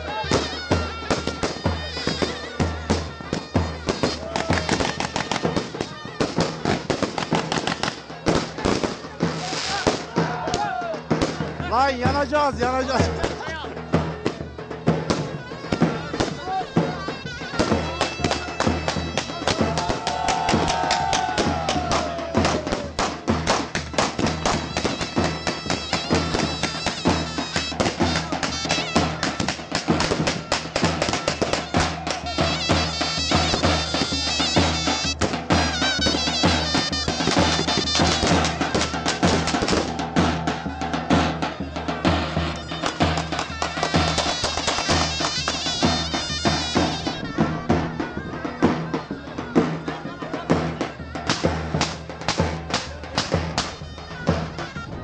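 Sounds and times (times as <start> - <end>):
drum beating fast strokes: 0.0 - 55.0
reedy wind instrument melody: 0.0 - 55.0.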